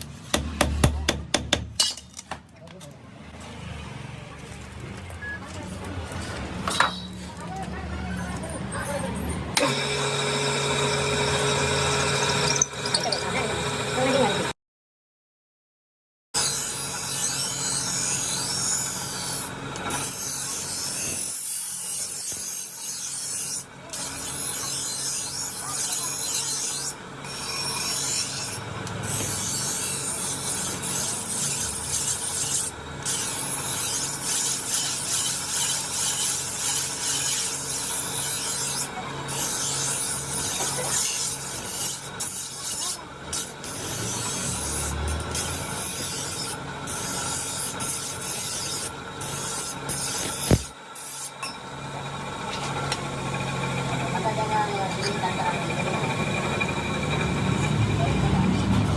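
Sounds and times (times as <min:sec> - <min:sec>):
knife blade scraping abrasive: 0:16.4 - 0:51.6.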